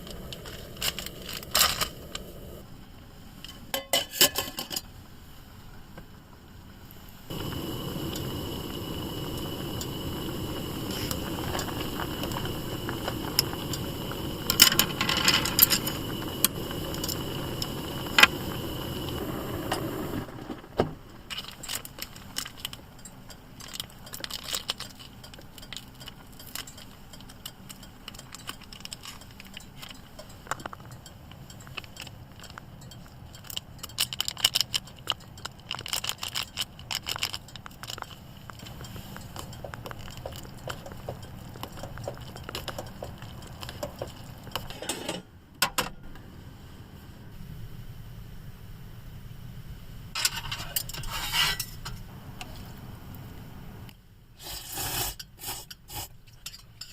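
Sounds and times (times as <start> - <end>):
utensils clinking on cookware: 3.7 - 4.9, 38.8 - 45.3.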